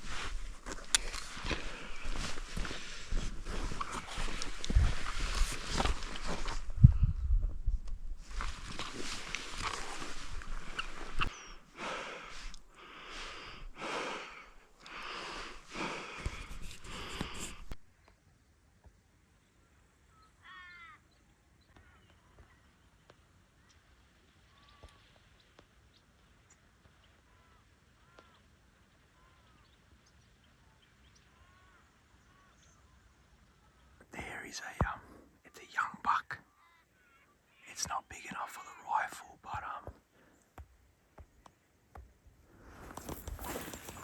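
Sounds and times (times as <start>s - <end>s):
person breathing heavily: 0.0s - 7.3s, 8.9s - 17.8s
faint bird chirps: 19.6s - 23.0s, 23.6s - 39.8s.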